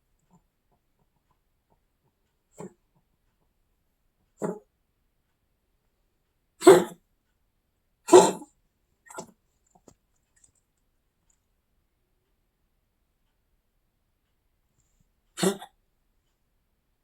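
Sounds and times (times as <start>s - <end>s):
person coughing: 6.6s - 7.0s, 8.1s - 8.5s, 15.4s - 15.7s.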